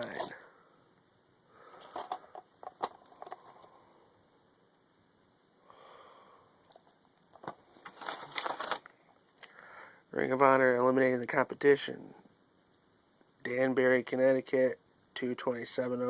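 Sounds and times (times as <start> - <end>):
plastic cases rustling: 0.0 - 0.4, 1.7 - 3.8, 6.6 - 9.0
soft breath: 0.4 - 2.4, 5.6 - 6.6, 9.5 - 10.1.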